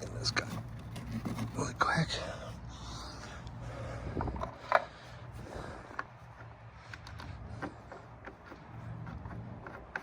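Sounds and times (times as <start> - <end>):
plastic clicks and scrapes: 0.3 - 1.8, 5.9 - 10.0.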